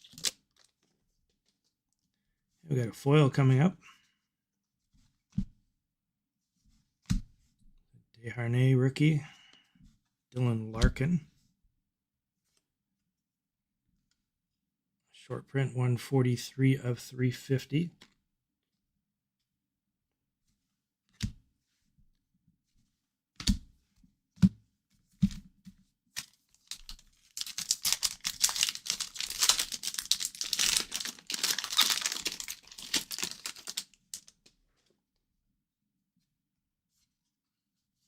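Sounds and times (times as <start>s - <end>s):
wrapper tearing and crinkling: 0.0s - 0.7s, 26.2s - 34.3s.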